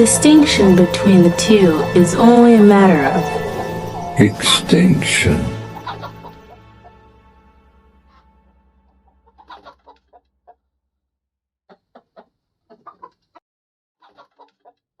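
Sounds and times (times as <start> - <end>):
music: 0.0 - 10.0
chicken clucking: 5.8 - 6.4, 9.3 - 10.3, 11.7 - 13.4, 14.0 - 14.8.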